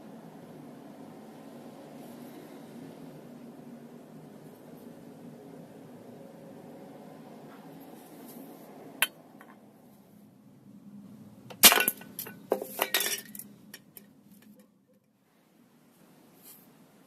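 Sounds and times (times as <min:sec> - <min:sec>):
metallic clinks and rattles: 0:11.5 - 0:14.6.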